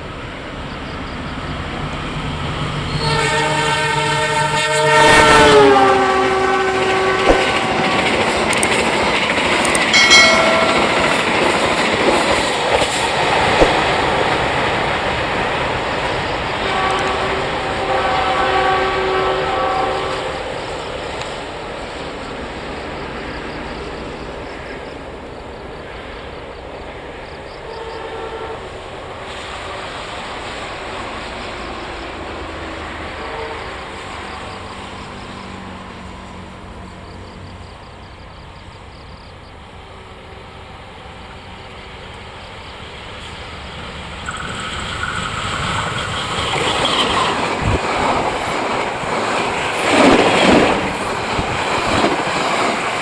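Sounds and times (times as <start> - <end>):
train rumble and rail noise: 0.0 - 53.0
train horn: 2.8 - 9.0, 9.7 - 13.6, 15.9 - 21.4, 27.5 - 29.8, 30.7 - 37.6.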